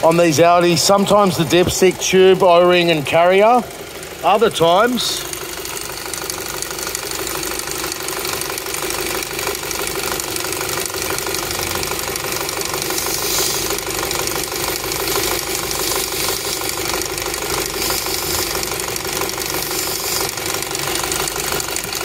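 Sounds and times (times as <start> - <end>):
car engine idling: 0.0 - 22.0
hiss of vacuum leak: 12.9 - 13.9, 17.7 - 18.6, 19.5 - 20.4.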